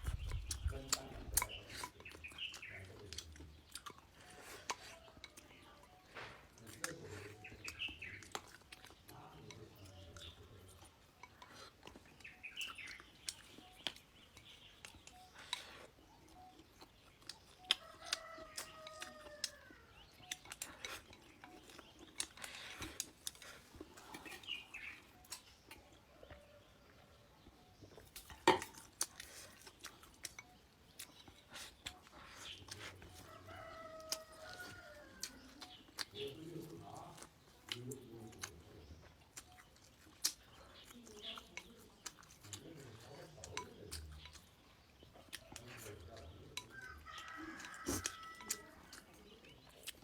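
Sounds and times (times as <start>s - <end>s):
rooster crowing: 33.3s - 35.3s, 46.8s - 48.8s.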